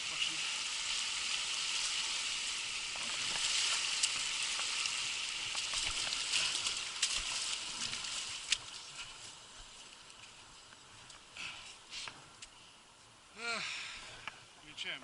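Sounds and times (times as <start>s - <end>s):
mountain stream rushing: 0.0s - 12.4s
water splashes and clicks: 2.9s - 11.3s.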